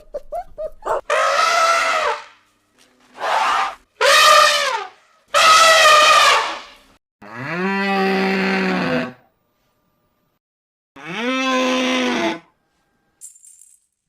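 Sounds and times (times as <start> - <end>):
high-pitched animal calls: 0.0 - 2.4
cow mooing: 7.2 - 9.3, 11.0 - 12.5.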